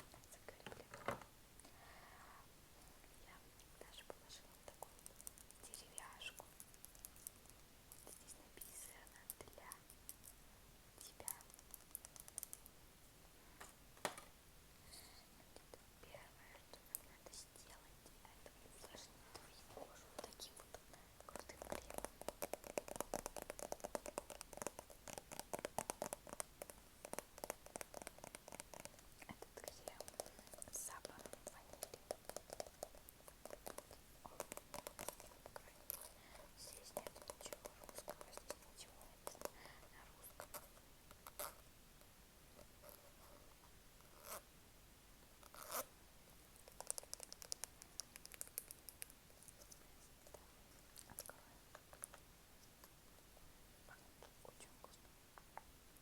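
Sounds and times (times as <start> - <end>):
soft clicks and taps: 0.0 - 1.8, 11.0 - 12.8, 13.6 - 14.3, 15.5 - 41.6, 46.6 - 55.7.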